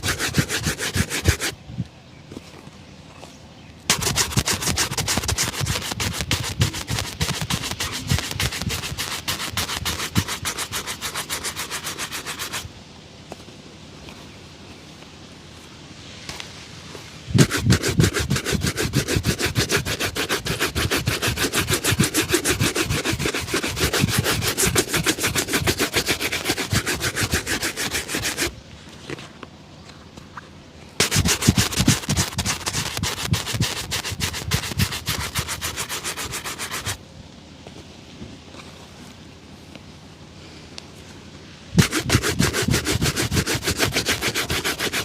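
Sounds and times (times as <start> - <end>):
shoe being buffed: 0.0 - 1.6, 3.9 - 12.7, 17.4 - 28.6, 31.0 - 37.0, 41.8 - 45.0.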